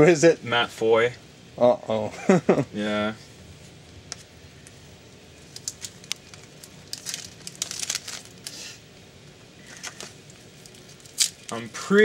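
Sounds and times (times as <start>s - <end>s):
foil wrapper crinkling: 5.3s - 8.8s, 9.6s - 12.0s.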